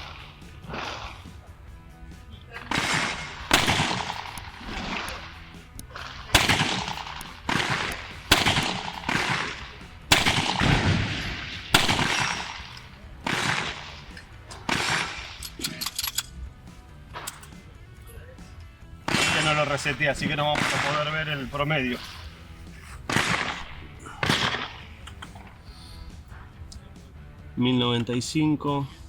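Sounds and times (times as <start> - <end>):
gunshots with ringing tail: 0.0 - 1.5, 2.6 - 16.1, 19.1 - 22.2, 23.1 - 25.6
background music: 0.0 - 29.0.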